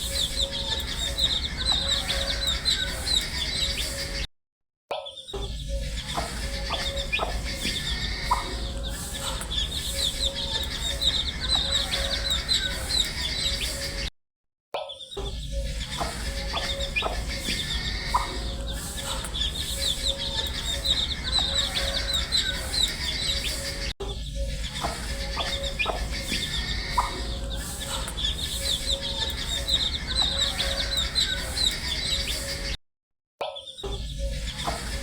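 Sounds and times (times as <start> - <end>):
baby chicks peeping: 0.0 - 4.2, 5.6 - 14.1, 15.5 - 32.8, 33.9 - 35.0
steady low hum: 5.6 - 14.0, 15.6 - 32.7.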